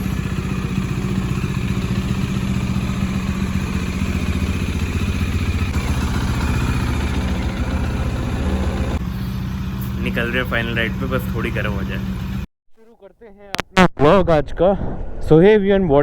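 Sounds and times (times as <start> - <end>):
motorcycle engine idling: 0.0 - 12.5.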